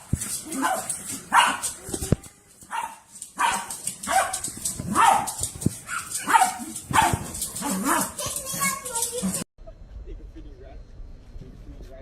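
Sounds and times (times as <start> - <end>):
dog barking: 0.5 - 1.8, 2.7 - 8.2.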